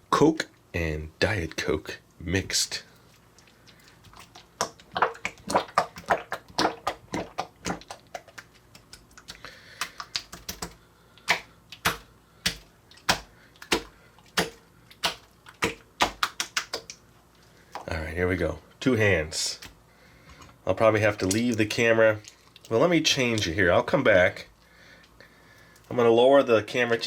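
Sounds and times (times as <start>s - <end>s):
wet clicks and pops: 3.3s - 17.0s
slime squished by hand: 3.4s - 17.0s.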